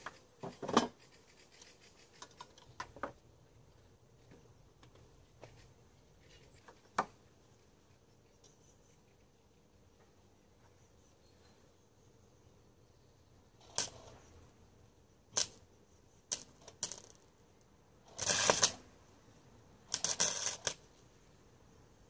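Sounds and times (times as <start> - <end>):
small metal parts clinking: 16.3 - 17.3, 19.9 - 20.8.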